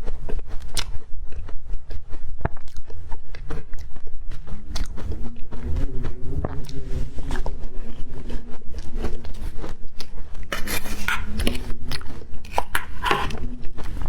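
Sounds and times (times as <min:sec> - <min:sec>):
chewing crunchy ice: 0:08.7 - 0:14.0.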